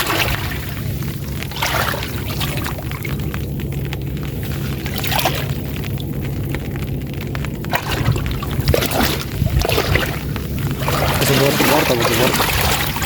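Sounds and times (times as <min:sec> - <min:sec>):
steady low hum: 0:00.0 - 0:13.0
water sloshing and splashing: 0:00.0 - 0:13.0.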